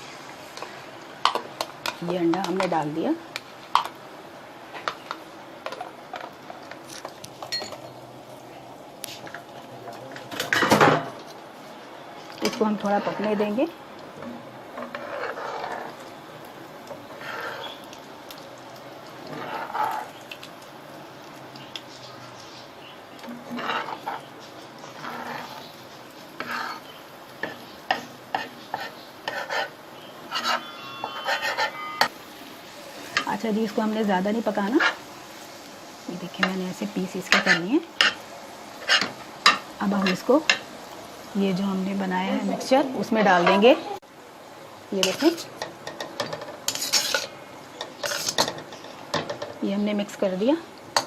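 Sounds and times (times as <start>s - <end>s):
utensil scraping pan: 12.4s - 16.0s, 17.1s - 17.9s, 19.2s - 20.2s, 23.3s - 25.8s, 26.4s - 32.1s, 34.6s - 35.0s, 37.2s - 38.2s, 38.8s - 40.6s, 45.0s - 49.5s.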